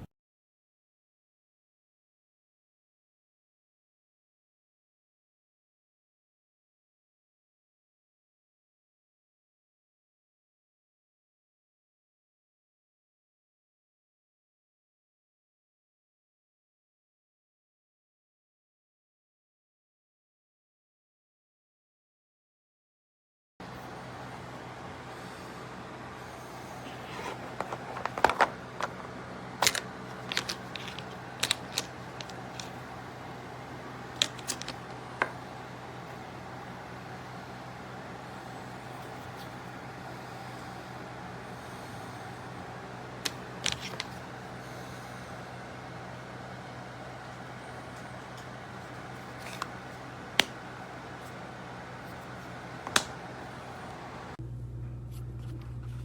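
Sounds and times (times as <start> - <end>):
steady low hum: 23.6 - 56.0
plastic pieces clicking and tapping: 27.5 - 32.8, 34.2 - 35.3, 43.2 - 44.2, 52.8 - 53.2.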